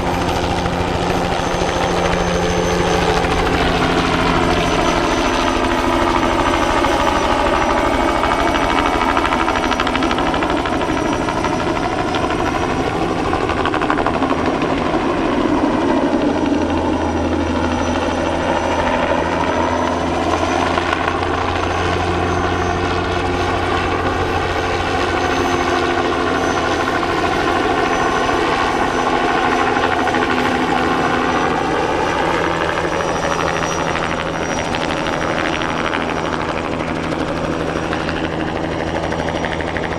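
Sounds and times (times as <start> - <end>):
helicopter rotor and turbine: 0.0 - 39.9.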